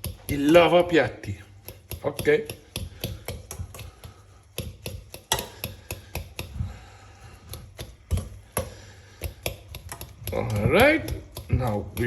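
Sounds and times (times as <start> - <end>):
fork clicking against pot: 0.0 - 6.6, 7.4 - 12.0.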